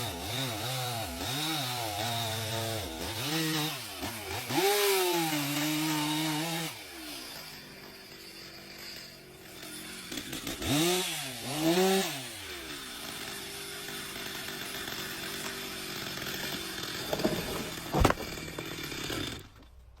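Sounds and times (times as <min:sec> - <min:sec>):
chainsaw revving and running: 0:00.0 - 0:19.6.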